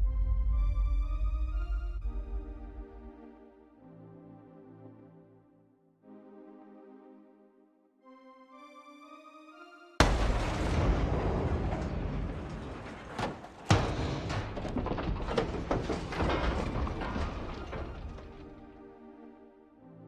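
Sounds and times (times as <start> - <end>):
sharp hits: 10.0 - 15.7
heavy impact boom: 10.0 - 17.8
crackling rumble: 10.0 - 18.8.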